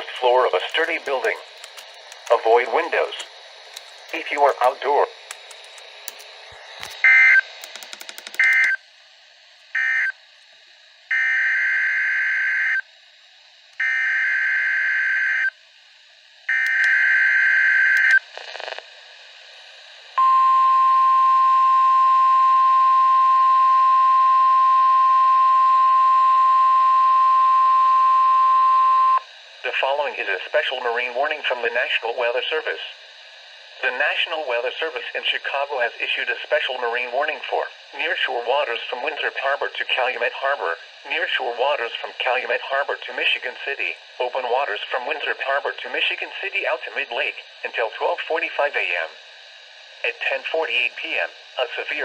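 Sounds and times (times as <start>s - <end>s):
steady alarm tone: 0.0s - 8.8s, 9.7s - 10.2s, 11.1s - 12.8s, 13.8s - 15.5s, 16.5s - 18.2s, 20.2s - 29.3s
data burst tones: 8.3s - 8.8s.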